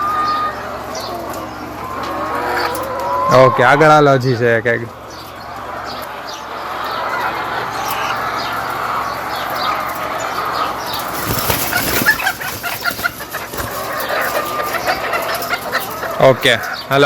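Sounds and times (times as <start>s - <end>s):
hens clucking and calling: 0.0s - 17.0s
wings flapping: 9.9s - 16.4s.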